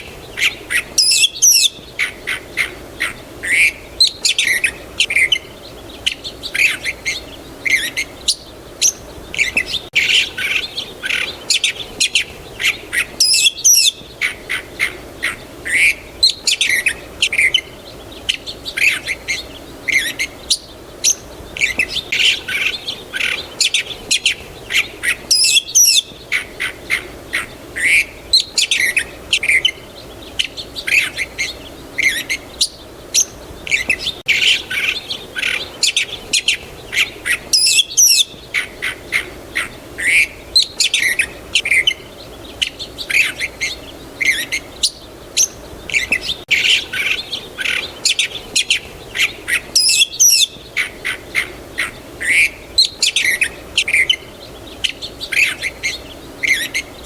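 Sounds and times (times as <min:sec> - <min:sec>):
songbirds chirping: 0:00.0 - 0:57.0.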